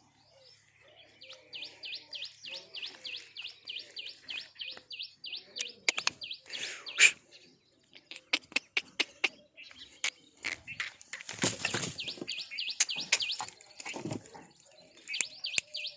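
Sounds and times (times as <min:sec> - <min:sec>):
small bird chirping rapidly: 0:08.2 - 0:14.0.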